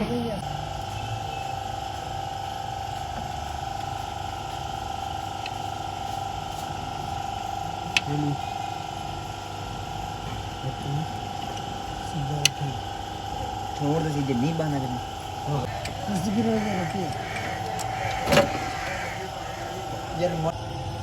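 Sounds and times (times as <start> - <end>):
mechanical hum with whine: 0.0 - 21.0
low voice fragments: 15.4 - 20.5.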